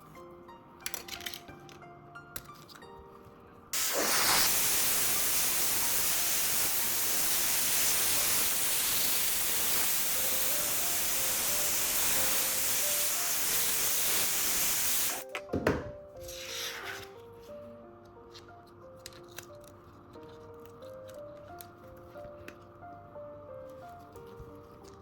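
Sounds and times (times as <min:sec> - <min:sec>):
soft background music: 0:00.0 - 0:25.0
loud steady hiss: 0:03.8 - 0:15.3.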